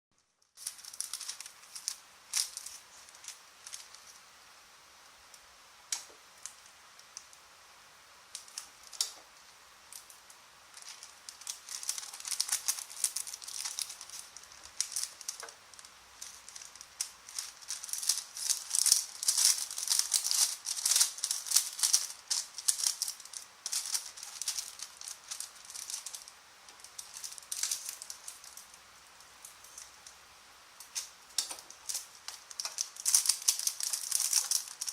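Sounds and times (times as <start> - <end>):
plastic bags crinkling: 0.5 - 4.2, 10.7 - 30.1, 30.8 - 34.9.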